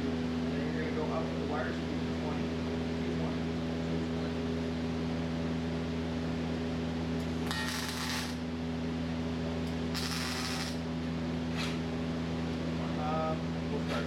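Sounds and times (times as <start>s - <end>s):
electrical hum: 0.0s - 13.8s
welding arc hiss: 7.5s - 8.5s, 9.9s - 10.8s.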